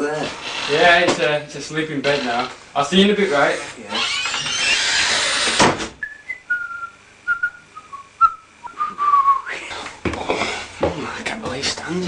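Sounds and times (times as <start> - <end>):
person whistling a tune: 6.0 - 9.6.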